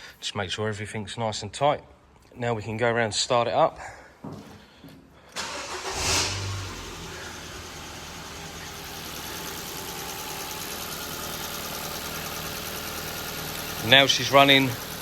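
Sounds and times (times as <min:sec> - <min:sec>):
petrol engine starting and idling: 0:05.4 - 0:15.0.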